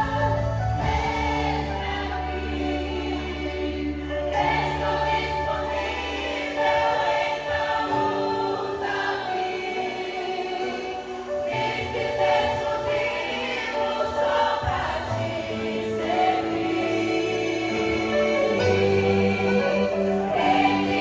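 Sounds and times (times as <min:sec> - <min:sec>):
electronic backing with bass: 0:00.0 - 0:06.7
choir singing worship song: 0:00.0 - 0:21.0.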